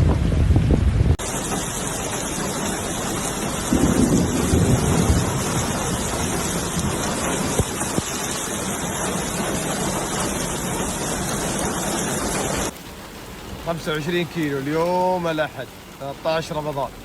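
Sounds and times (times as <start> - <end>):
wind on microphone: 0.0 - 1.2
heavy downpour: 0.0 - 17.0
running floodwater: 1.1 - 17.0
low rumble: 2.6 - 11.7.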